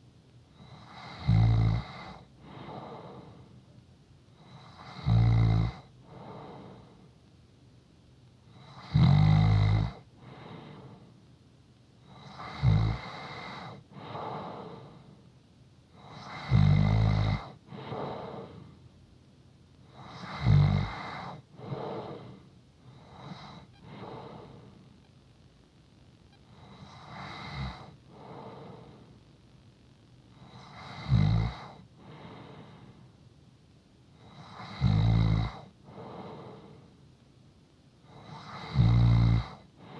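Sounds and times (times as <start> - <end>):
soft breathing: 2.4 - 4.6, 6.0 - 7.3, 10.1 - 11.3, 13.3 - 16.3, 17.5 - 19.0, 21.1 - 25.1, 26.4 - 29.4, 31.7 - 33.3, 35.6 - 37.0, 39.6 - 39.9
person snoring: 30.5 - 32.4, 34.4 - 36.7.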